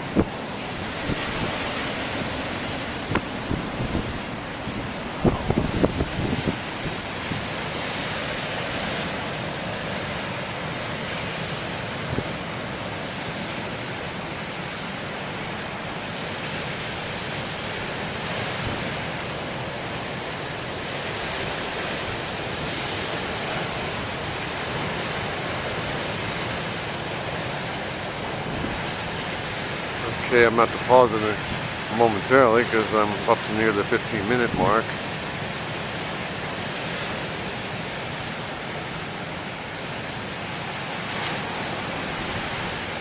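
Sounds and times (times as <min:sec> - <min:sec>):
wind buffeting microphone: 0:00.0 - 0:09.3, 0:27.3 - 0:37.6
waves breaking on shore: 0:00.0 - 0:43.0.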